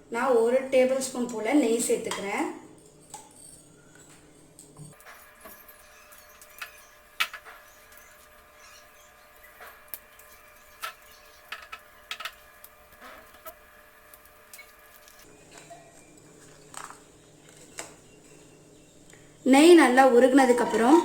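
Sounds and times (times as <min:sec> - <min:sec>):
hot ghee crackling and popping: 0:02.8 - 0:19.4.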